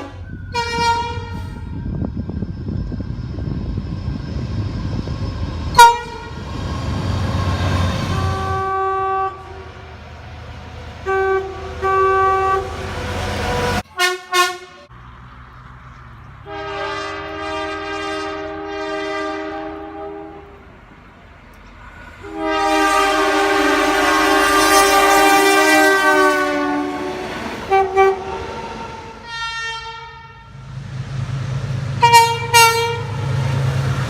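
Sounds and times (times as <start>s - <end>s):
train horn chords: 0.0s - 1.8s, 5.7s - 6.5s, 7.3s - 10.0s, 10.7s - 14.9s, 16.4s - 20.6s, 22.2s - 30.6s, 32.0s - 33.5s
train rumbling past: 0.0s - 34.0s.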